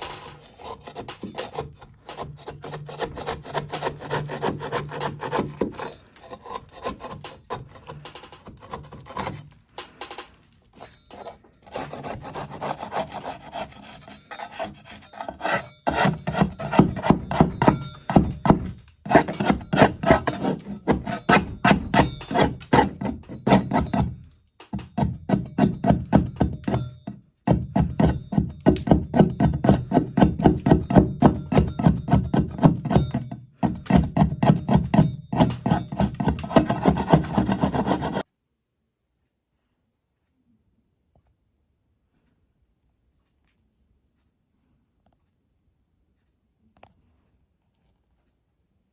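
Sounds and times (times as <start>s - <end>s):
metal spatula scraping wall: 0.0s - 38.2s.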